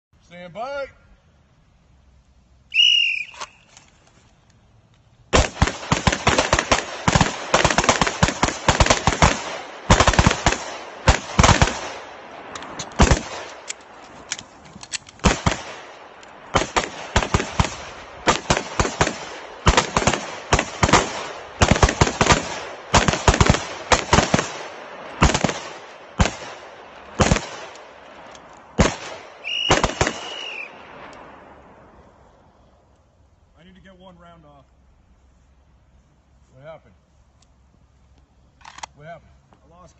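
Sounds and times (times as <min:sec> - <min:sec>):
gunfire: 0:05.3 - 0:13.7, 0:15.2 - 0:28.0, 0:28.8 - 0:31.1.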